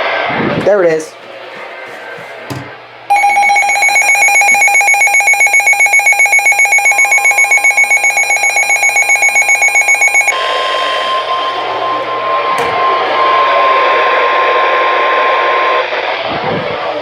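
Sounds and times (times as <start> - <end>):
rapidly pulsing electronic beep: 3.1 - 10.3
steady warning tone: 3.1 - 15.3.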